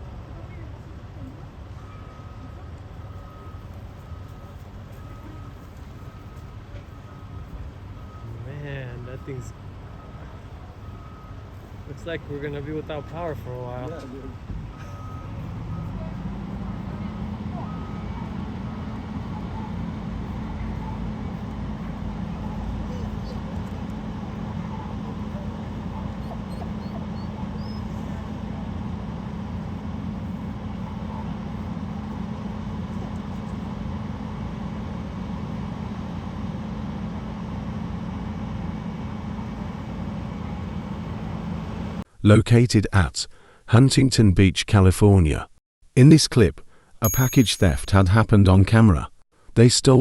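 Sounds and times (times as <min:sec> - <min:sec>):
truck engine running: 0:00.0 - 0:42.1
faint high chirps: 0:47.0 - 0:47.9.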